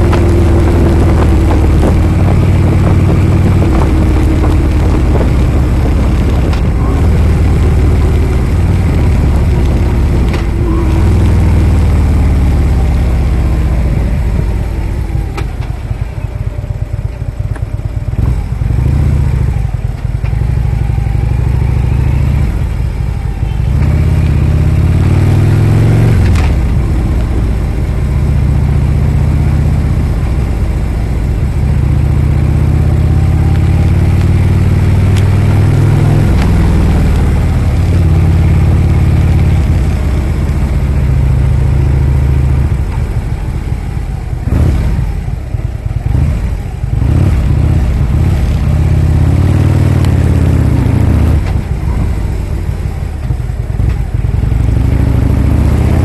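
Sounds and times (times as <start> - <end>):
motorcycle engine accelerating: 0.0 - 56.0.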